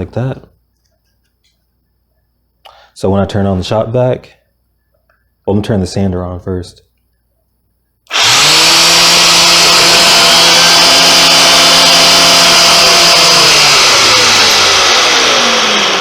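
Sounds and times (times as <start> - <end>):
motor spinning down: 8.1 - 16.0
shop vacuum and sander running: 8.1 - 16.0.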